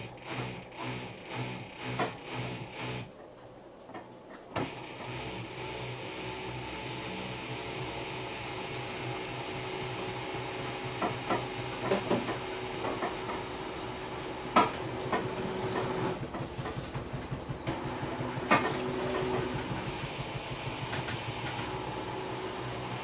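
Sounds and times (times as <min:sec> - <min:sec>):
washing machine motor hum: 0:00.0 - 0:23.0
washing machine clunks: 0:10.7 - 0:22.0.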